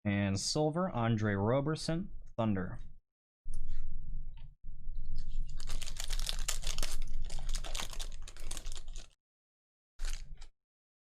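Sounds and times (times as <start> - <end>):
foil card pack tearing open: 5.5 - 9.2, 10.0 - 10.5.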